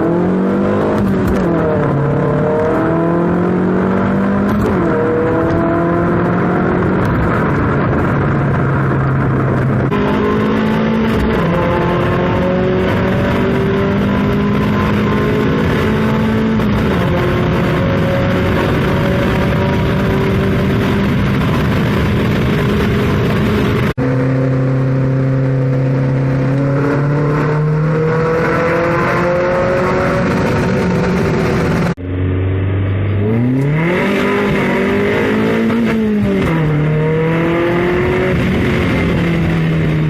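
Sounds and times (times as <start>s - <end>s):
car engine revving and idling: 0.0s - 40.0s.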